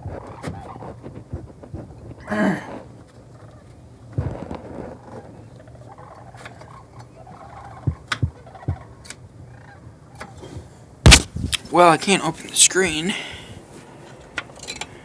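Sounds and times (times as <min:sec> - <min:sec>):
waterfowl calling: 0:00.0 - 0:10.4.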